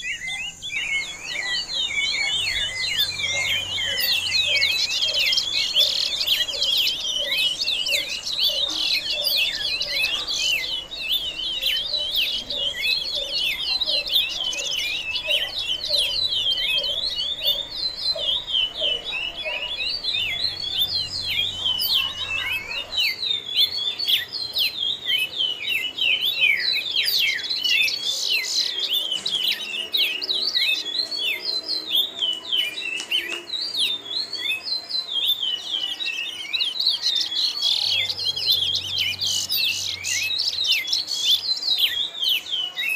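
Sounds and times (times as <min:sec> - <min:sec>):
birds chirping and singing: 0:00.0 - 0:42.9.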